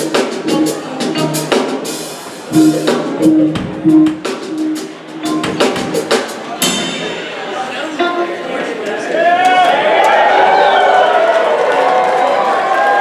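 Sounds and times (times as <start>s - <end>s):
drum kit: 0.0s - 7.7s
live band playing: 0.0s - 9.0s.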